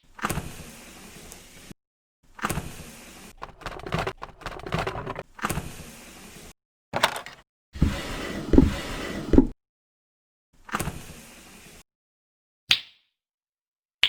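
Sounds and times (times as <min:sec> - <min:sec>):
mechanical whirring and clatter: 0:03.3 - 0:05.3, 0:07.8 - 0:09.6.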